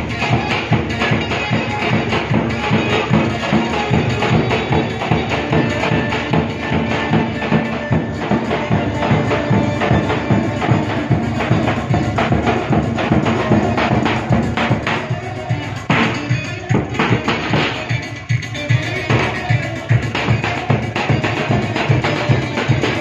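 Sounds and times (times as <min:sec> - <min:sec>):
fast dance music: 0:00.0 - 0:23.0.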